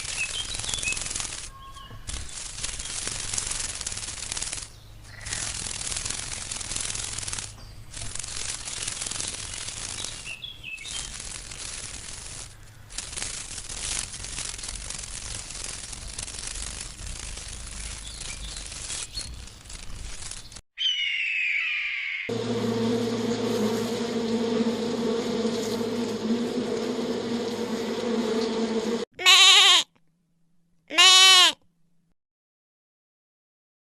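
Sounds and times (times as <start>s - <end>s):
insects buzzing and hissing: 0.0s - 20.6s, 22.3s - 29.0s
falling chirp: 20.8s - 26.0s
steady low buzz: 22.3s - 29.1s.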